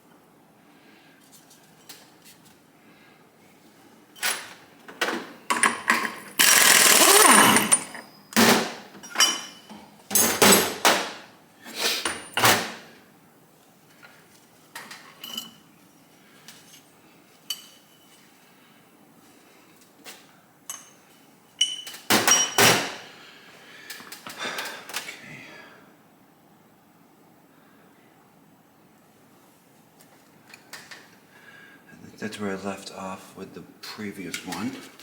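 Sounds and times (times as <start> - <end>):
pneumatic impact wrench hammering: 5.5 - 8.8.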